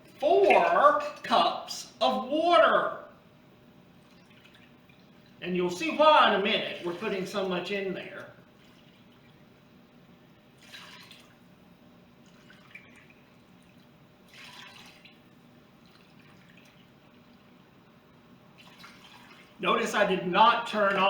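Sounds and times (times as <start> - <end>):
water splashing into pot: 10.6 - 11.4, 12.3 - 17.4, 18.6 - 19.6.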